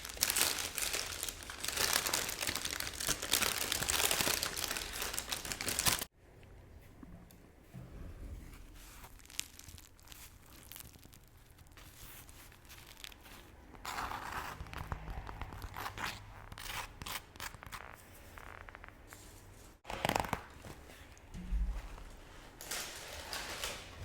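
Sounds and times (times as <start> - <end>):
rustling: 7.6 - 16.0.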